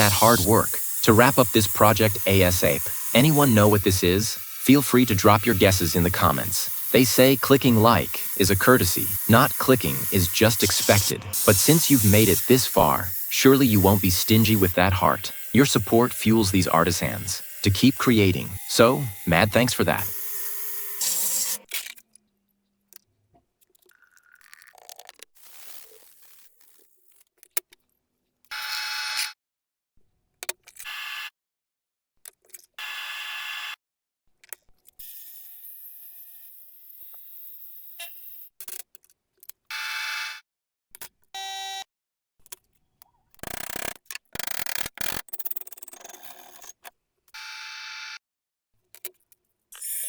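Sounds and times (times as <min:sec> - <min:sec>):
small power tool motor whine: 0:00.0 - 0:16.0, 0:16.6 - 0:17.6, 0:20.0 - 0:21.7.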